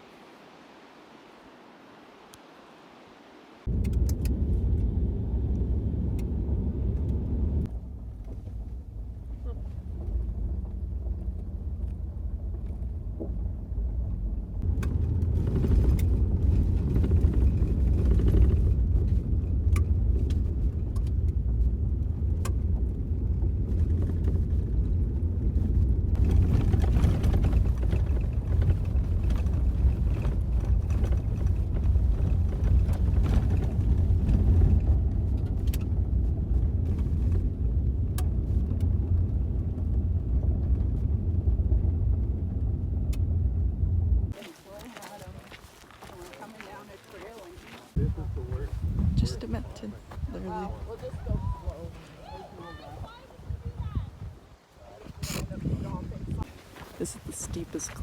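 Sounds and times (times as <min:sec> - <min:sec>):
vehicle driving on gravel: 0:03.6 - 0:54.1, 0:55.1 - 0:58.0.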